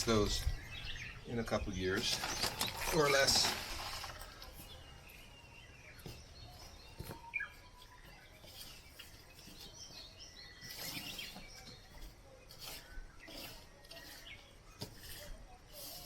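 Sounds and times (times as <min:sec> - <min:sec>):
faint songbird chirps: 0:00.0 - 0:15.5
brief rustle: 0:02.0 - 0:04.8.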